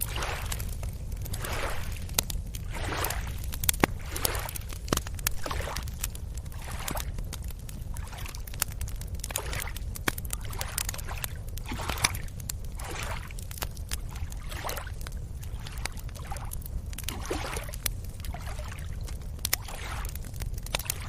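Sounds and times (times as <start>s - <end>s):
steady low rumble: 0.0s - 18.4s
small waves lapping on beach: 0.1s - 0.7s, 1.3s - 4.7s, 5.4s - 5.8s, 6.4s - 7.2s, 10.4s - 13.4s, 14.2s - 18.9s, 19.6s - 20.1s.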